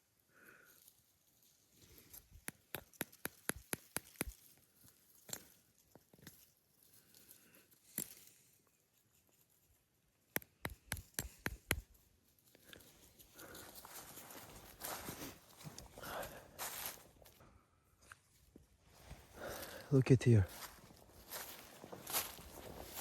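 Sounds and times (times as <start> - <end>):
footsteps on stony ground: 12.8 - 17.4, 18.9 - 23.0.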